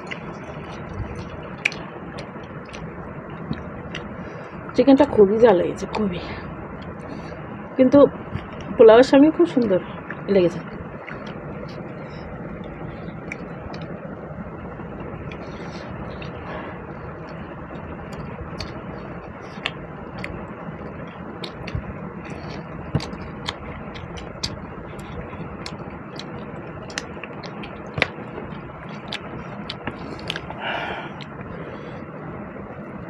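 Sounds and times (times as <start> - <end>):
steady background hum: 0.0 - 33.0
chewing: 19.4 - 30.6.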